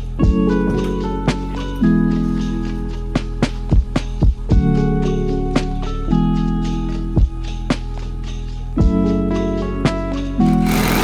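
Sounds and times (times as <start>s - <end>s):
soft drum beat: 0.2s - 4.9s.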